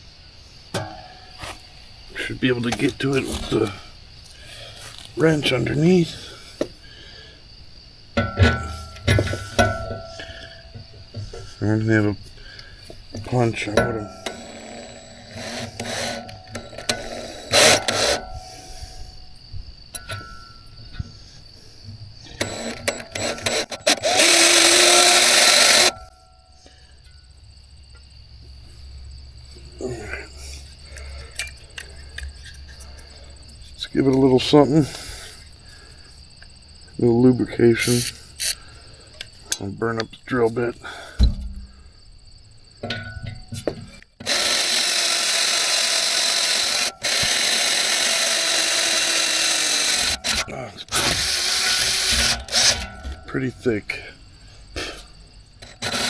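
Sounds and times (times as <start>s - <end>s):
power drill drilling into steel: 13.8s - 18.8s, 22.4s - 26.0s, 44.2s - 53.1s, 55.6s - 56.0s.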